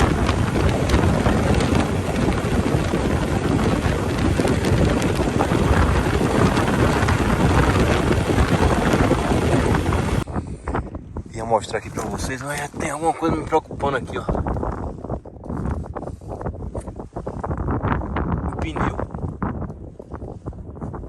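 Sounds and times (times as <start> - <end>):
tyres crackling over gravel: 0.0 - 10.2
wind rushing on microphone: 0.0 - 21.0.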